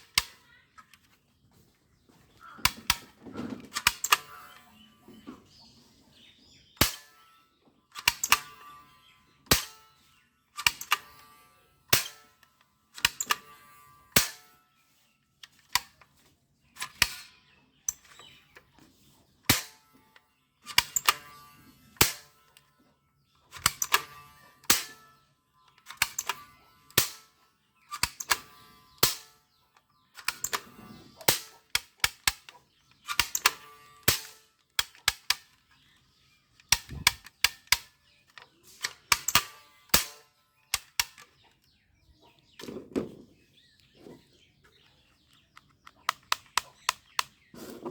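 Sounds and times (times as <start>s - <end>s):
toy guns firing: 0.0s - 1.0s, 2.6s - 4.8s, 6.8s - 14.6s, 15.4s - 16.1s, 16.8s - 18.6s, 19.5s - 20.0s, 20.6s - 22.7s, 23.5s - 41.6s, 45.1s - 47.5s.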